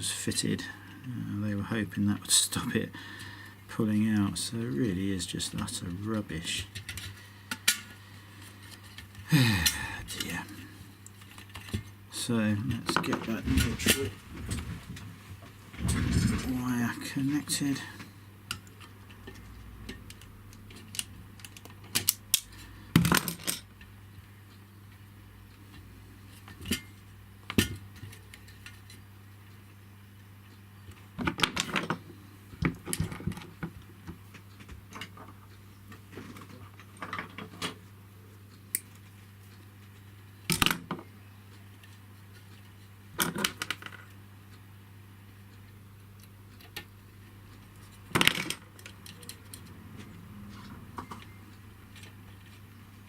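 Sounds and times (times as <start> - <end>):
steady low hum: 0.0 - 53.0.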